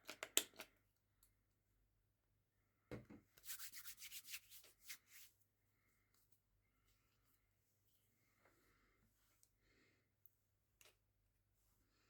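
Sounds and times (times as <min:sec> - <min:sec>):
hands rubbing skin: 0:03.4 - 0:05.3.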